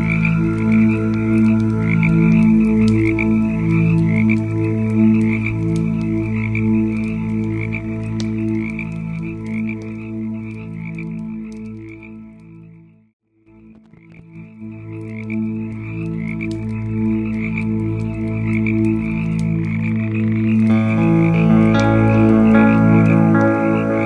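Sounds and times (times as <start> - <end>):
frogs croaking: 0.0 - 9.8, 20.5 - 24.0
campfire crackling: 0.0 - 10.0, 20.6 - 24.0.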